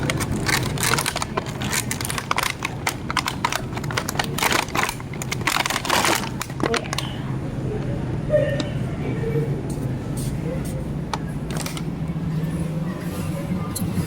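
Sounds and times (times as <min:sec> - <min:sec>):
packaging crinkling: 0:00.0 - 0:07.2, 0:11.2 - 0:12.2
steady low hum: 0:00.0 - 0:14.0.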